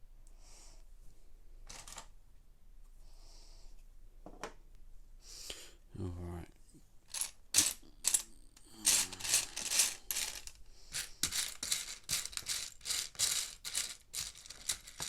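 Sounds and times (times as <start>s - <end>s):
plastic pieces clattering: 7.1s - 15.0s.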